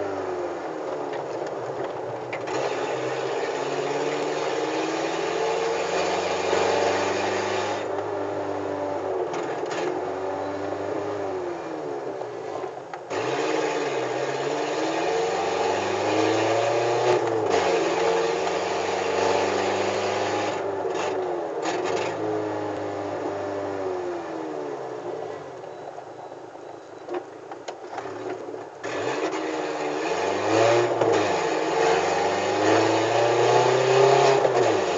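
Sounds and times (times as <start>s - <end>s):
car engine revving loudly: 2.5s - 11.7s, 13.1s - 24.2s, 28.8s - 34.9s.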